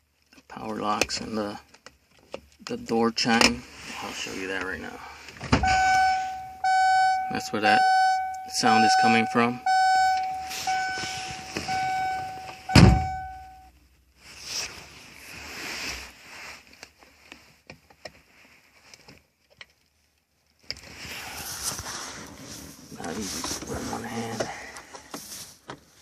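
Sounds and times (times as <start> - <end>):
car door chime beeping: 5.6 - 13.7
loud thunk: 12.8 - 13.1.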